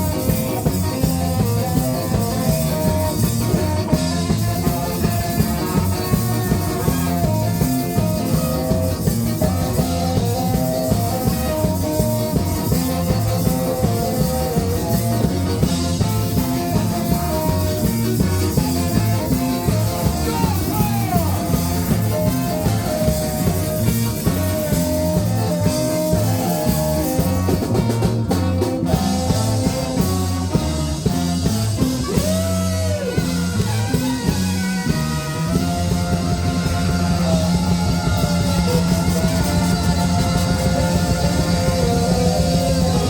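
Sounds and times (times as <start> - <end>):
live ska band playing: 0.0 - 43.0.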